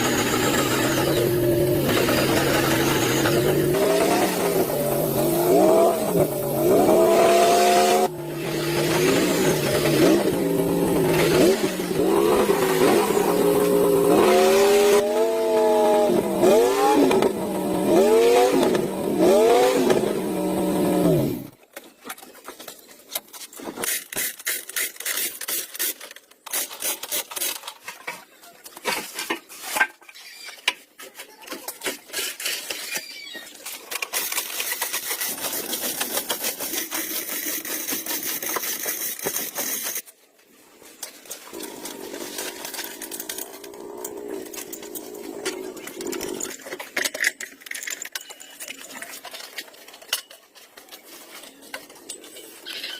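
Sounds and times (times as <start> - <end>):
jeep engine revving: 0.0 - 21.5
tools clicking and scraping on metal: 21.8 - 40.2, 41.0 - 52.9.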